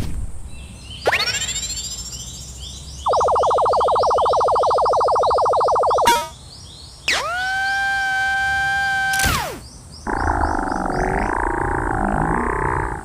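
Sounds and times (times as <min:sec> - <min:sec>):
fast-pulsing alarm tone: 0:03.1 - 0:06.3
held electronic tone: 0:03.1 - 0:06.4.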